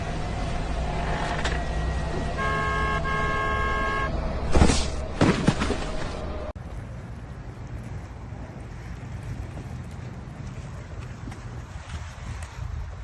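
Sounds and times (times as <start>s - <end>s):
horn-like tone: 1.7s - 4.4s.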